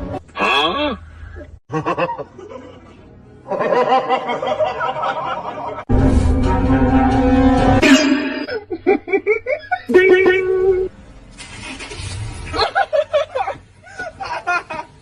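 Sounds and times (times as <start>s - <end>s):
snickering laughter: 1.7s - 2.9s, 12.5s - 14.9s
music: 2.2s - 8.5s.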